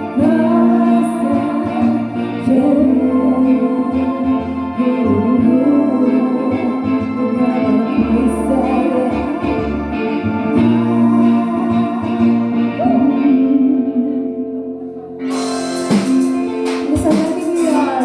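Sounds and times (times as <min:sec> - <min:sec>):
faint person singing: 0:00.0 - 0:18.0
pop song with guitar: 0:00.0 - 0:18.0
drums: 0:15.2 - 0:18.0.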